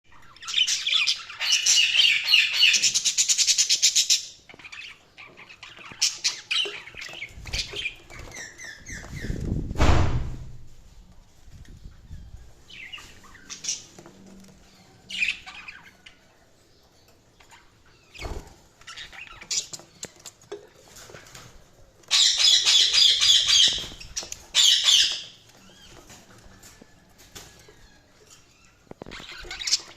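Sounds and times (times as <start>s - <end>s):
budgerigars chirping and chattering: 0.1s - 9.5s, 12.1s - 14.0s, 14.7s - 20.4s, 22.0s - 26.8s, 27.6s - 29.9s
low thump: 9.6s - 10.7s.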